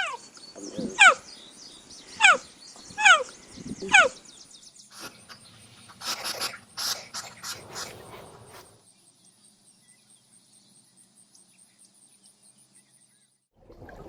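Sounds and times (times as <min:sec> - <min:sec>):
animal hoarse calls: 0:04.9 - 0:08.8
animal yelping: 0:06.0 - 0:08.8.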